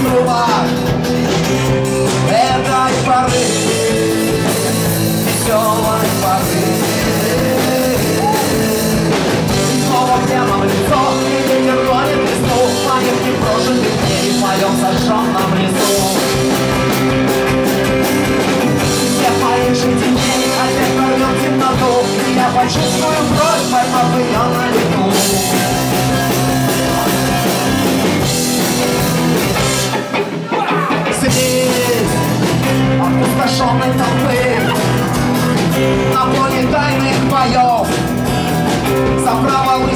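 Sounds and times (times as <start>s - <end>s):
guitar and band: 0.0s - 39.9s
rock song with singing: 0.0s - 39.9s.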